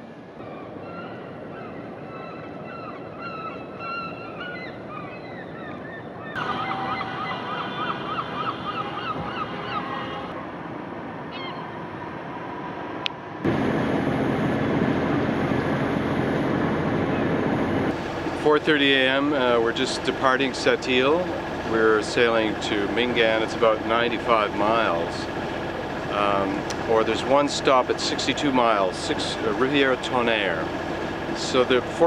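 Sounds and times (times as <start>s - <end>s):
flock of birds calling: 0.4s - 10.4s
loud steady rushing noise: 6.4s - 32.0s.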